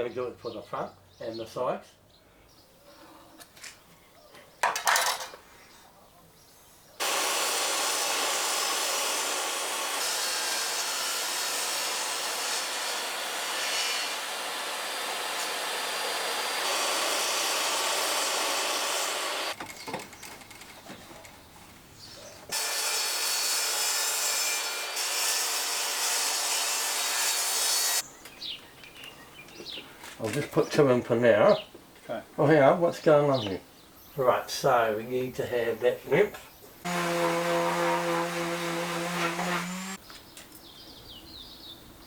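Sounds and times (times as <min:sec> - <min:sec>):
saw cutting plywood: 0:07.0 - 0:19.6, 0:22.5 - 0:28.0, 0:36.8 - 0:40.0.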